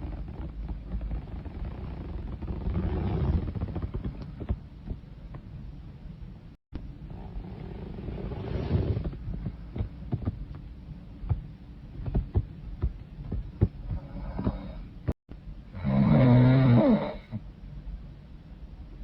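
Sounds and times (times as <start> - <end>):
woman snoring: 15.8 - 17.4.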